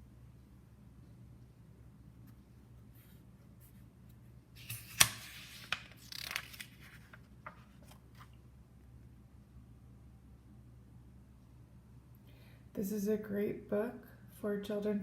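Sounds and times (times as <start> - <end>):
book pages rustling: 4.6 - 8.4.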